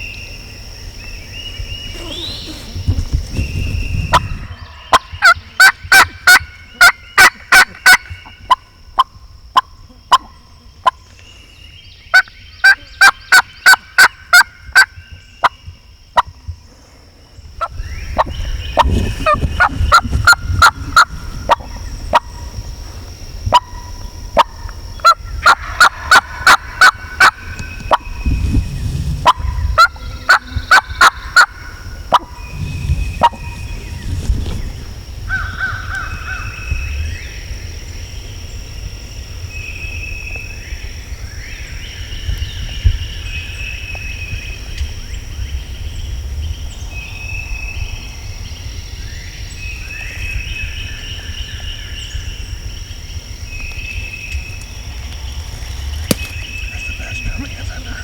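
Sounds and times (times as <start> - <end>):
turkey calling: 4.1 - 8.6, 24.4 - 28.1, 29.2 - 33.7, 56.1 - 58.0.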